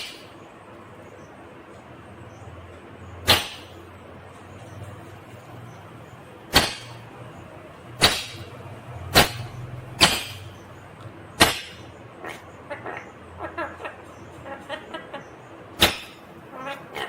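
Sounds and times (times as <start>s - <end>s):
steady low hum: 0.0s - 17.0s
parrot harsh calls: 11.4s - 17.0s.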